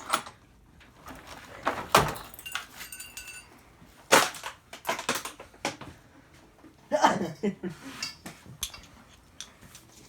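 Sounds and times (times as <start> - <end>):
metal tools clanking: 2.0 - 3.6, 8.0 - 9.9
faint metallic ringing: 2.2 - 3.6.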